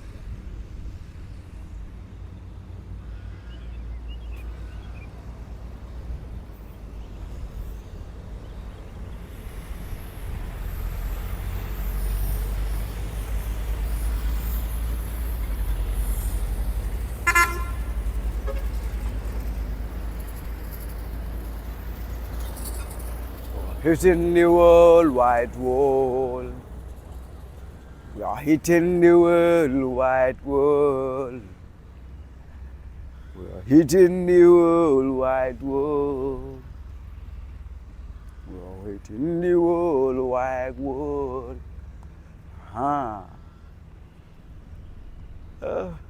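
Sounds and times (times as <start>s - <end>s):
road traffic rumble: 0.0s - 46.0s
vehicle horn toot: 17.2s - 18.9s.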